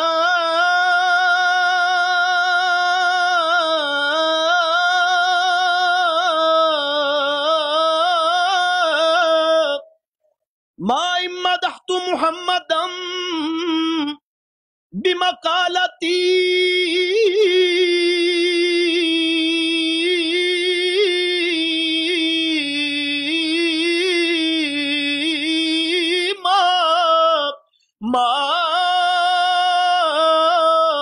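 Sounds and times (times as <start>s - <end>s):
person singing unaccompanied: 0.0s - 10.0s, 10.8s - 14.2s, 15.0s - 31.0s.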